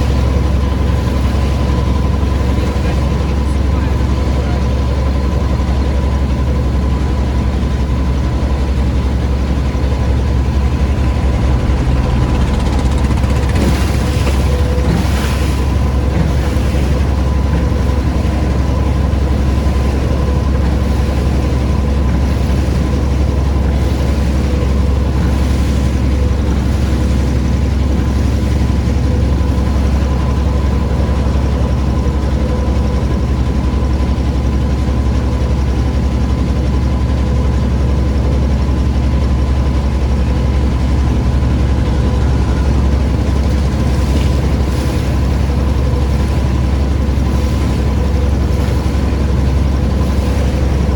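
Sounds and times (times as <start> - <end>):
low engine drone: 0.0 - 50.9.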